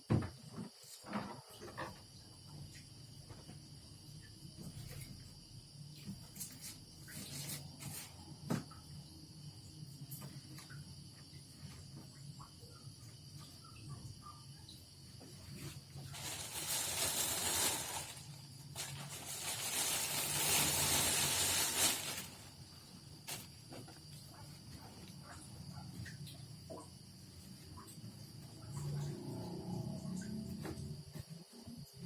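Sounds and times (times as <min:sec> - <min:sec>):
long hissing bursts: 0:16.0 - 0:22.6.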